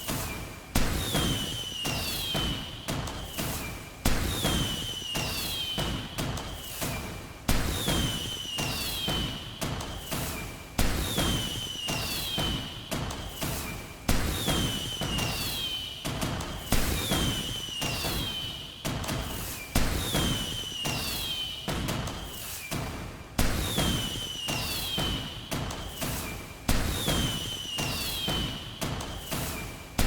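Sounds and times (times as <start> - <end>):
fireworks bangs: 13.6 - 15.8, 23.4 - 29.6
high falling whistle: 27.4 - 28.5.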